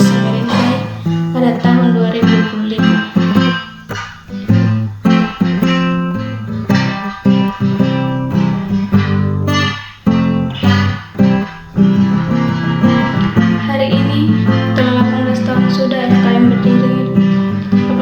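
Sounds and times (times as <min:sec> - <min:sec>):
bass line: 0:00.0 - 0:01.8
plucked guitar: 0:00.0 - 0:18.0.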